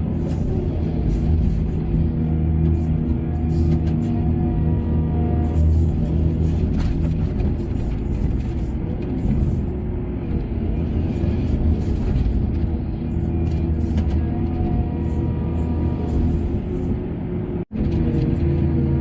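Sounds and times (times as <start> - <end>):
heavy machinery engine rumble: 0.0 - 19.0.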